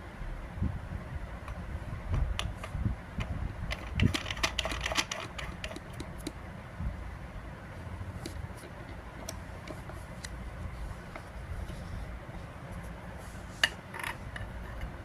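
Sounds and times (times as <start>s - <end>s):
low rumble of handling: 0.2s - 15.0s
plumbing parts clicking: 1.4s - 6.4s, 8.2s - 10.4s.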